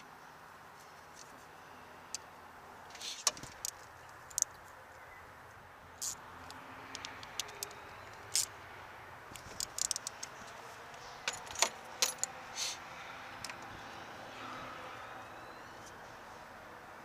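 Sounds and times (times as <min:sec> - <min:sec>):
small clicks and metallic rattles: 0:02.9 - 0:04.6, 0:06.0 - 0:08.5, 0:09.3 - 0:12.4.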